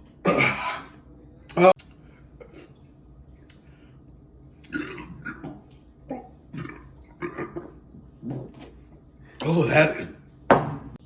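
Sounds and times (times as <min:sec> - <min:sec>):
man burping: 0:00.2 - 0:00.9.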